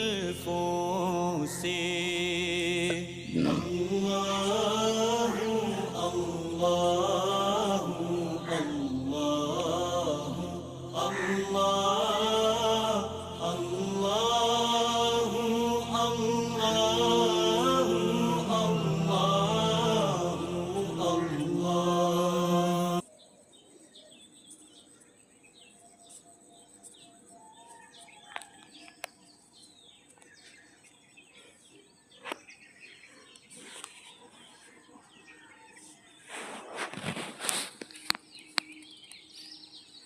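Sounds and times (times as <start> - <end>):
devotional chant singing: 0.0 - 23.1
small birds chirping: 0.0 - 40.0.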